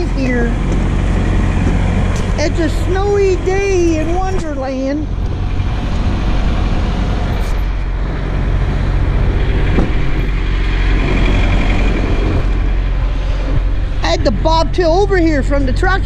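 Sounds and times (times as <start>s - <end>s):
diesel truck engine idling: 0.0s - 16.0s
steady rushing noise: 0.0s - 16.0s.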